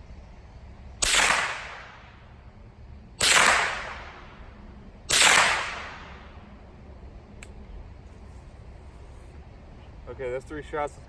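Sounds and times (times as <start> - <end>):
rifle shots: 1.0 - 2.1, 3.2 - 4.3, 5.1 - 6.3.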